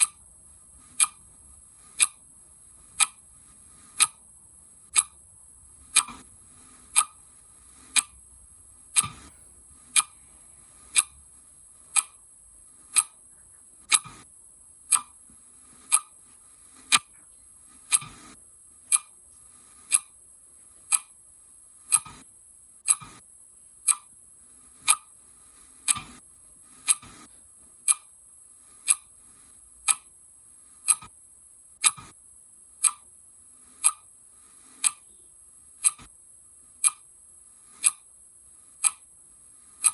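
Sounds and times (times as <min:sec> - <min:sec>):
clock ticking: 0:00.0 - 0:00.2, 0:00.8 - 0:02.2, 0:03.0 - 0:03.3, 0:03.9 - 0:04.2, 0:04.8 - 0:05.2, 0:05.8 - 0:08.2, 0:08.9 - 0:12.3, 0:12.9 - 0:13.2, 0:13.9 - 0:14.2, 0:14.9 - 0:15.2, 0:15.8 - 0:16.2, 0:16.9 - 0:17.1, 0:17.9 - 0:19.2, 0:19.8 - 0:20.2, 0:20.8 - 0:21.2, 0:21.9 - 0:22.2, 0:22.9 - 0:23.2, 0:23.9 - 0:24.2, 0:24.8 - 0:25.1, 0:25.8 - 0:26.2, 0:26.8 - 0:28.1, 0:28.8 - 0:29.2, 0:29.8 - 0:30.1, 0:30.8 - 0:31.2, 0:31.8 - 0:32.1, 0:32.8 - 0:33.1, 0:33.8 - 0:34.1, 0:34.8 - 0:35.2, 0:35.8 - 0:36.1, 0:36.8 - 0:37.1, 0:37.7 - 0:38.1, 0:38.8 - 0:39.1
faint high hiss: 0:00.0 - 0:22.8.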